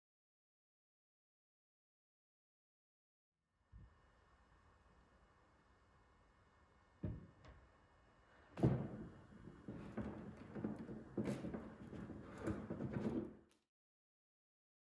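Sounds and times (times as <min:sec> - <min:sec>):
knocks and clatters of handling: 0:08.6 - 0:13.5.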